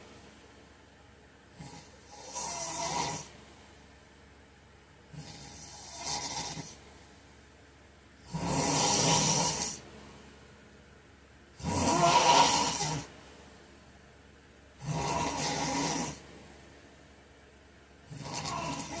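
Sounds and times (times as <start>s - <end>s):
man snoring: 1.6s - 3.3s, 5.1s - 6.8s, 8.2s - 9.8s, 11.6s - 13.1s, 14.8s - 16.2s, 18.1s - 19.0s.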